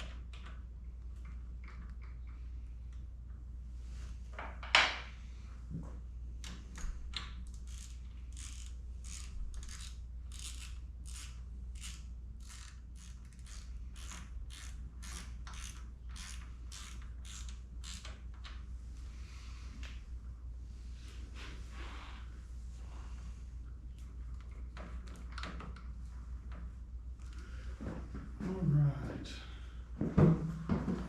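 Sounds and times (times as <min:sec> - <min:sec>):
ratchet wrench clicking: 0:07.5 - 0:18.2.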